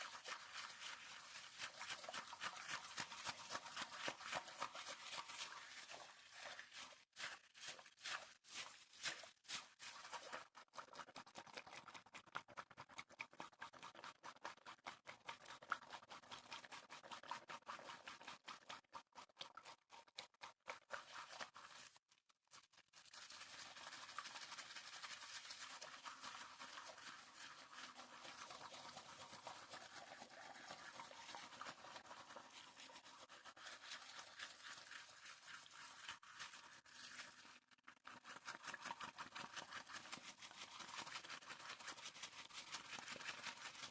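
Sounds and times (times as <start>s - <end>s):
wet tapping and splashing: 17.3s - 22.0s.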